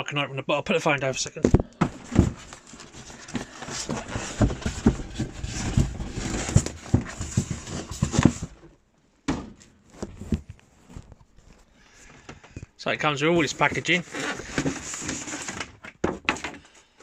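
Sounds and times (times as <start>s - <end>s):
cardboard box opening: 1.4s - 8.7s, 9.9s - 11.7s, 13.4s - 15.8s
knocks scrapes and rustling: 1.4s - 8.8s, 9.6s - 12.6s, 13.2s - 16.8s.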